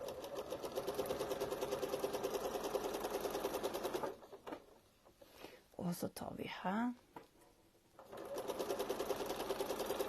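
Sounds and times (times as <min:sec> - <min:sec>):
sewing machine stitching: 0:00.0 - 0:04.7, 0:08.0 - 0:10.0.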